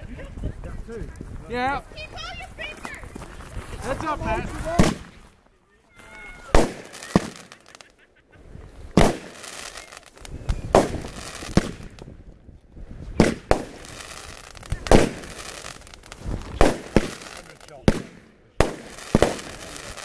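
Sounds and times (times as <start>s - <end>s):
fireworks hissing crackle: 2.0s - 5.4s, 6.4s - 8.0s, 8.6s - 12.2s, 13.0s - 20.0s
fireworks bangs: 3.8s - 5.3s, 6.3s - 7.9s, 8.9s - 12.2s, 13.1s - 20.0s.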